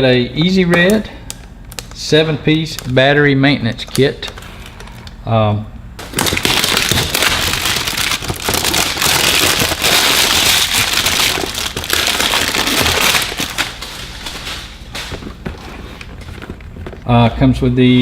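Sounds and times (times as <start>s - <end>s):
packaging crackling: 0.9s - 2.0s, 6.0s - 17.1s.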